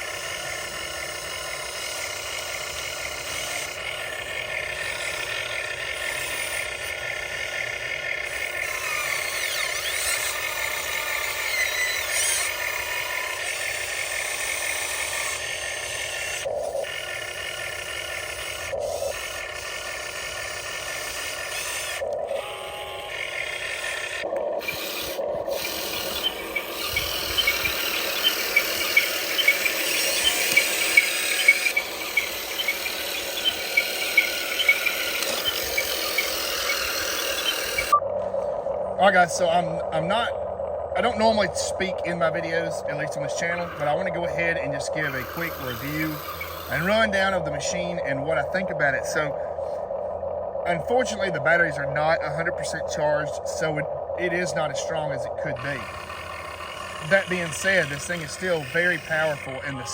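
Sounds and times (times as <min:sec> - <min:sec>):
electric motors and gears whining: 0:00.0 - 0:59.9
quick repeating ticking: 0:23.1 - 0:38.0, 0:41.0 - 0:49.2, 0:50.6 - 0:59.9.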